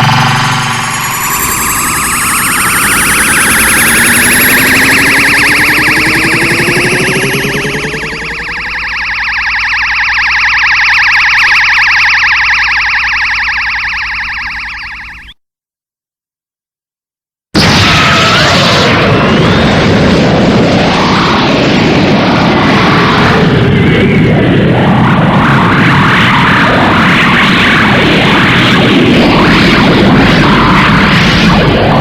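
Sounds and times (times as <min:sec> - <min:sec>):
energy beam charging whoosh: 0:00.0 - 0:12.8
pulsing electric hum: 0:00.0 - 0:15.3.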